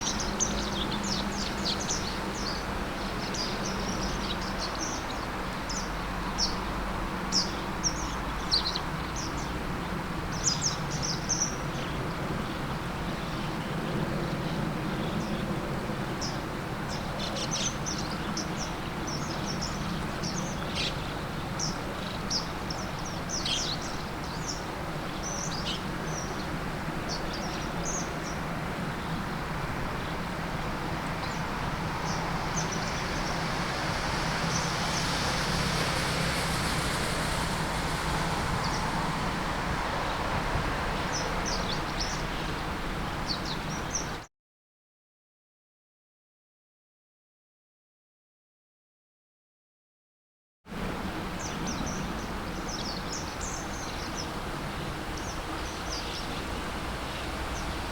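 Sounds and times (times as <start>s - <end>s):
wagtail calling: 31.0s - 40.3s, 51.4s - 57.9s.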